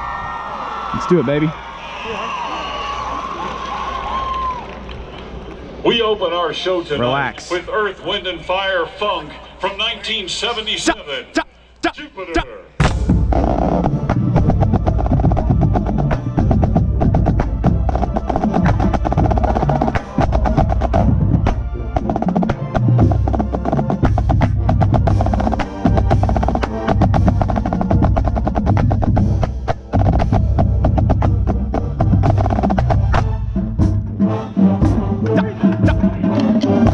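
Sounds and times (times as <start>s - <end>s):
marching snare drum rolls: 12.8s - 34.2s
marching band: 12.8s - 36.9s.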